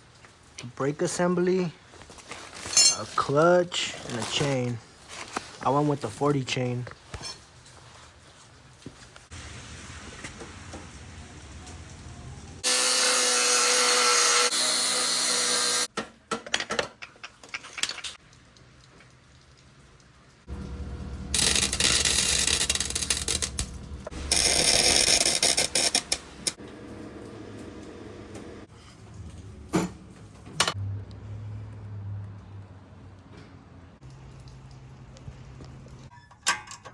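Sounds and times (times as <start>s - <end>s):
power tool noise: 12.6s - 15.9s, 20.5s - 26.6s.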